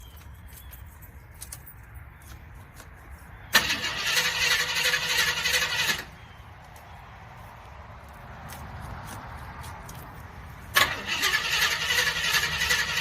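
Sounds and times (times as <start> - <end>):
starter cranking engine: 3.5 - 6.1, 10.7 - 13.0.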